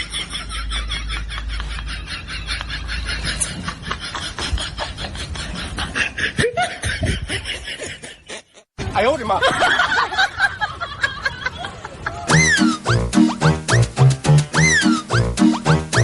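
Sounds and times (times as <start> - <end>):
breathy snickering laughter: 0.0 - 8.8.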